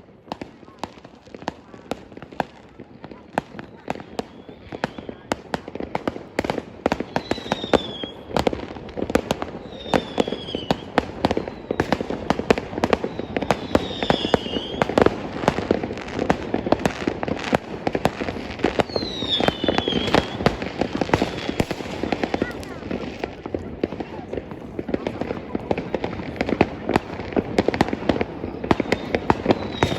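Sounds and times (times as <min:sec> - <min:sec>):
fireworks bangs and pops: 0:00.0 - 0:29.9
whistling firework shells: 0:03.4 - 0:05.4, 0:07.0 - 0:08.3, 0:09.3 - 0:15.7, 0:18.3 - 0:22.6, 0:28.1 - 0:29.9.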